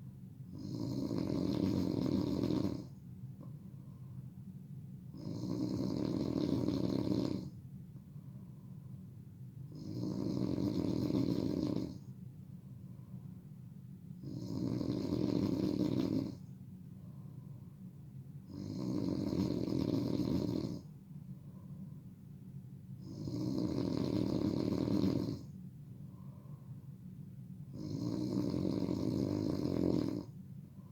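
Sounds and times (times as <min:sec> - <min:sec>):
quiet breathing: 0:00.0 - 0:30.9
person snoring loudly: 0:00.6 - 0:02.9, 0:05.2 - 0:07.5, 0:09.8 - 0:12.0, 0:14.2 - 0:16.4, 0:18.5 - 0:20.8, 0:23.0 - 0:25.5, 0:27.8 - 0:30.3.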